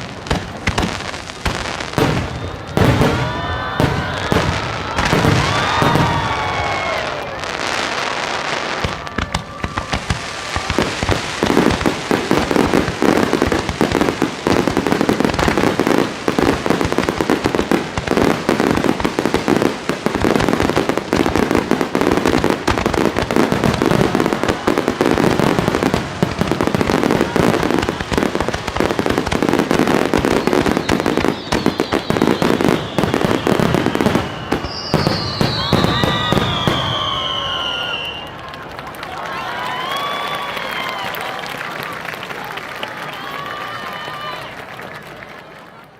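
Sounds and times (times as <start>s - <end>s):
fireworks bursting and crackling: 0.0s - 45.9s
falling whistling tone: 30.4s - 38.4s.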